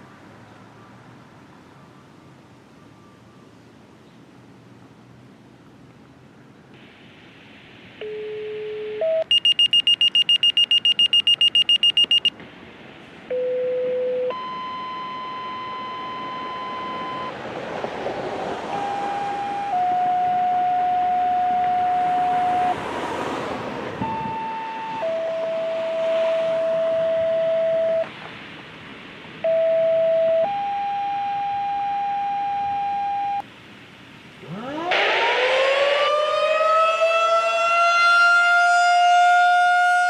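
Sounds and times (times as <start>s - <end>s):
radio signalling beeps: 8.0s - 12.4s, 13.3s - 17.3s, 24.0s - 28.1s, 29.4s - 33.4s
rapid high beeps: 9.1s - 12.3s.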